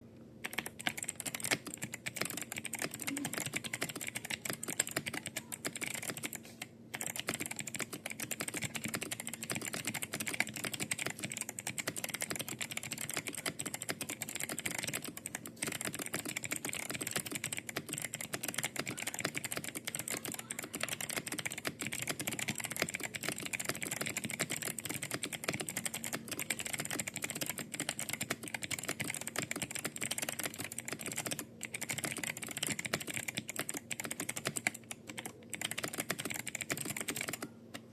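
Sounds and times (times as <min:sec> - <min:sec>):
fast typing on mechanical keyboard: 0:00.4 - 0:37.5.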